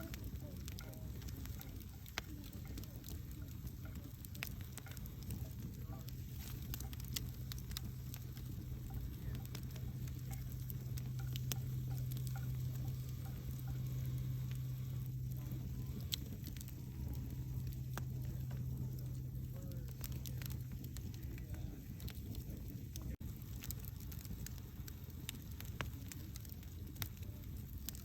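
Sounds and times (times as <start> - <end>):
campfire crackling and popping: 0.0 - 28.0
steady low hum: 0.0 - 28.0.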